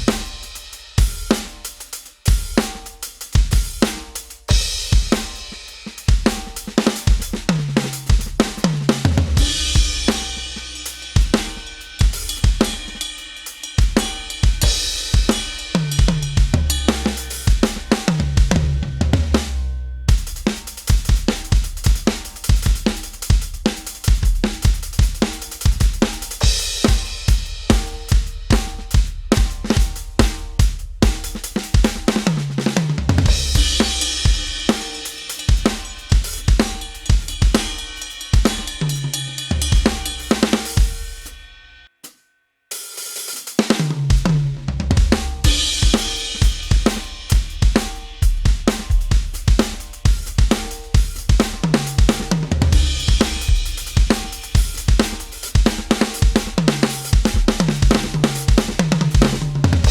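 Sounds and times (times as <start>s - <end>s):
bass drum: 0.0s - 1.6s, 2.3s - 13.0s, 13.8s - 41.4s, 44.0s - 59.9s
crashing cymbals: 0.0s - 8.7s, 9.4s - 18.7s, 33.3s - 41.9s, 45.1s - 59.9s
snare drum: 0.0s - 41.4s, 42.9s - 59.9s
hi-hat: 9.4s - 18.1s, 33.4s - 41.4s, 45.2s - 59.9s.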